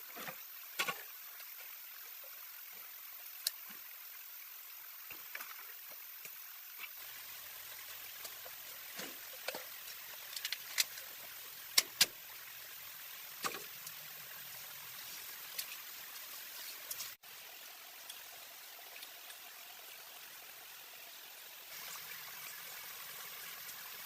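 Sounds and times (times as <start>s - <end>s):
running water hiss: 0.0s - 24.0s.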